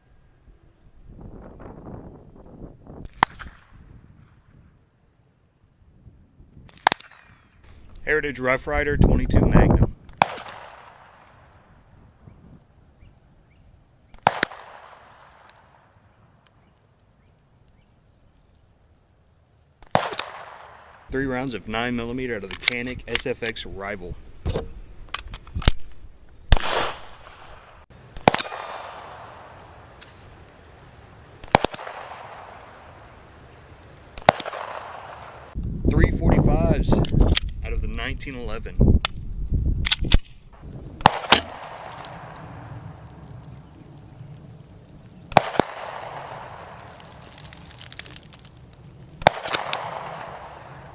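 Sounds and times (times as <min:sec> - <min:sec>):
distant pistol shots with echo: 0:26.5 - 0:30.2, 0:31.4 - 0:33.4, 0:34.2 - 0:35.6, 0:41.0 - 0:43.1, 0:45.3 - 0:46.7, 0:49.2 - 0:50.9.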